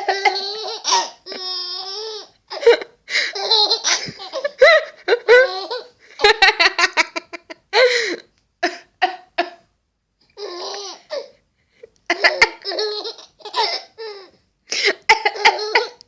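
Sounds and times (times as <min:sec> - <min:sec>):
baby laughing: 0:00.0 - 0:07.2, 0:10.4 - 0:11.3, 0:12.1 - 0:16.0.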